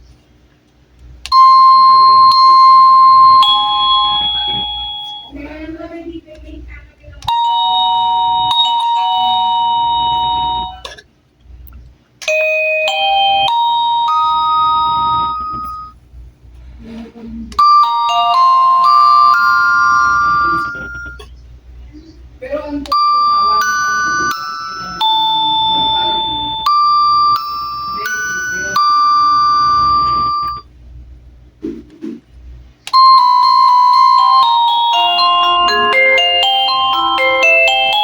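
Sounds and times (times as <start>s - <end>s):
doorbell electronic chime tunes: 1.3s - 5.4s, 7.3s - 10.8s, 12.2s - 16.0s, 17.6s - 21.2s, 22.9s - 30.7s, 32.9s - 38.0s.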